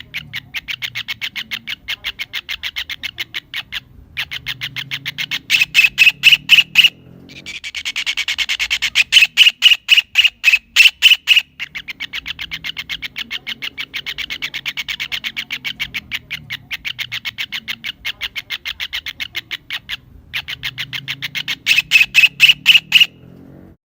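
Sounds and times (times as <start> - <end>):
kingfisher calling sharp notes: 0.0 - 23.2.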